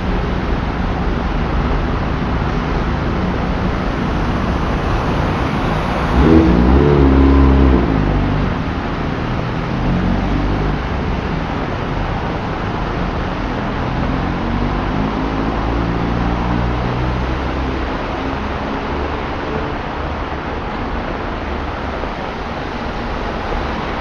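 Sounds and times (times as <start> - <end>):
tyres hissing on wet road: 0.0 - 24.0
vehicle engine passing: 0.0 - 24.0.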